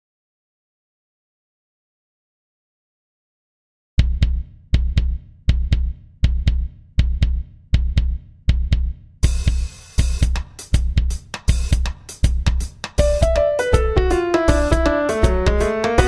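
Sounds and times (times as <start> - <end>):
bass drum beat: 4.0 - 16.0
sustained instruments: 13.0 - 16.0.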